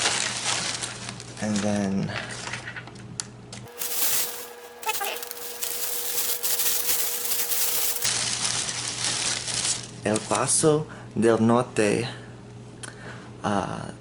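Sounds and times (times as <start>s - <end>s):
packaging rustling and crinkling: 3.7s - 8.6s.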